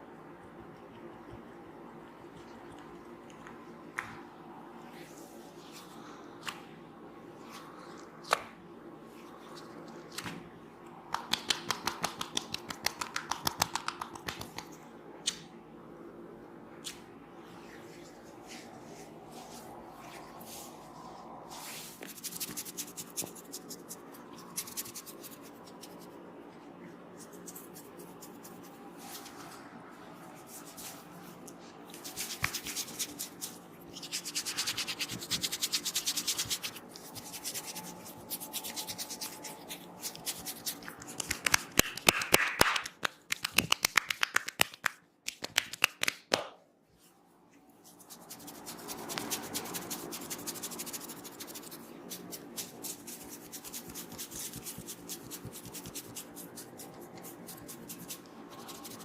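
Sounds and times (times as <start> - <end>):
hands rubbing hair and scalp: 11.1 - 14.8, 16.9 - 26.2, 27.1 - 46.3, 47.0 - 59.0
sharp clicking snaps: 11.1 - 15.5.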